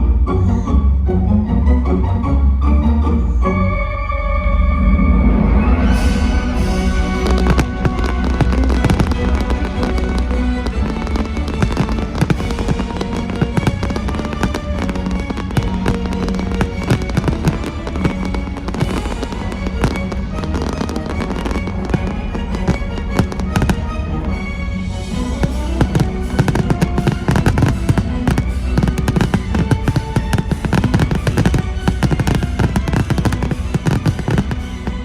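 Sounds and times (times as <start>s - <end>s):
fireworks bangs and crackles: 5.9s - 35.0s.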